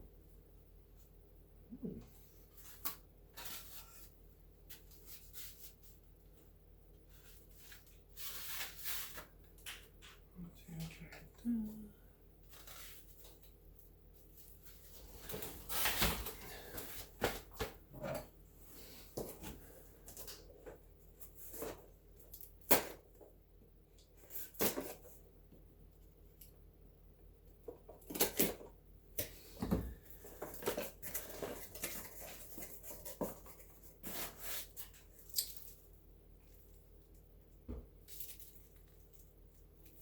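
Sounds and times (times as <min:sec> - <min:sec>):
packaging rustling and crinkling: 0:30.1 - 0:35.9.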